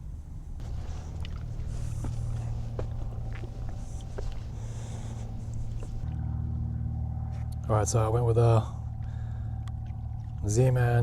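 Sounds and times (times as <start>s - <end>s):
low motor hum: 0.0s - 11.0s
rustling: 0.6s - 6.0s.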